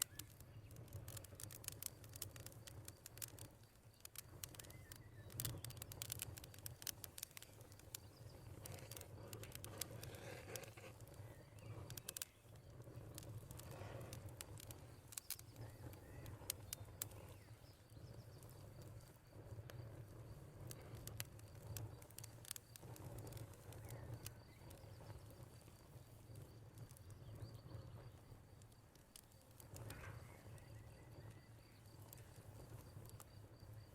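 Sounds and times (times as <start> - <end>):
sharp pops: 0.0 - 19.1, 20.6 - 33.4
cricket trill: 0.0 - 33.9
wood fire crackling: 0.0 - 33.9
faint bird calls: 15.1 - 18.6, 29.4 - 32.4.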